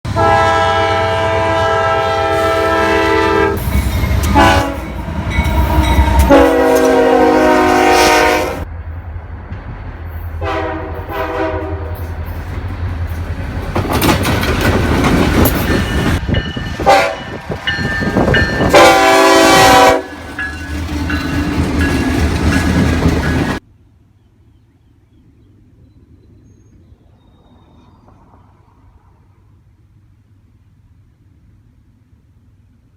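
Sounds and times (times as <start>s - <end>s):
locomotive air horn blasts: 0.1s - 8.7s, 10.4s - 12.1s, 16.8s - 17.4s, 18.6s - 20.2s
locomotive engine rumble: 0.1s - 23.7s
train wheels clattering: 3.4s - 7.3s, 11.0s - 23.6s.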